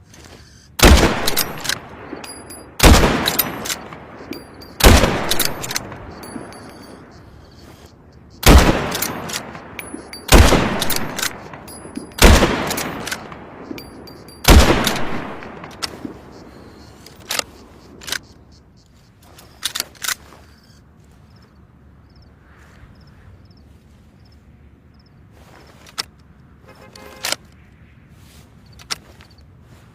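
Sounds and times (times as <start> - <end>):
rifle shots echoing: 0.8 - 7.6, 8.4 - 18.1.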